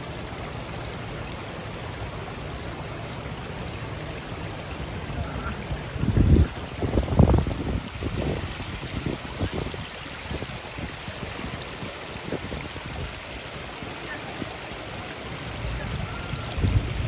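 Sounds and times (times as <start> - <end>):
running water rushing: 0.0 - 17.0
wind buffeting microphone: 5.1 - 17.0.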